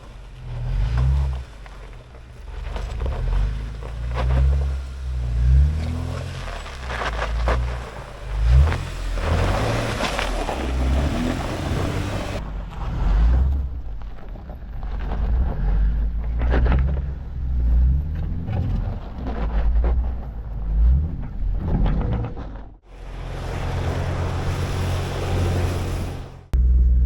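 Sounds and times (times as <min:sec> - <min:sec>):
vehicle engine rumble: 0:00.0 - 0:27.0
knocks and rattles over bumps: 0:13.4 - 0:22.9.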